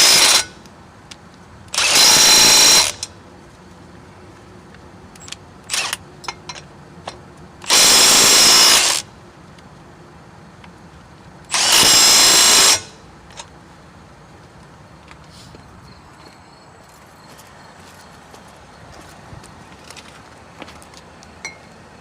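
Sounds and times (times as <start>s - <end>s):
impact wrench running: 0.0s - 0.5s, 1.7s - 3.0s, 7.6s - 9.0s, 11.5s - 12.9s.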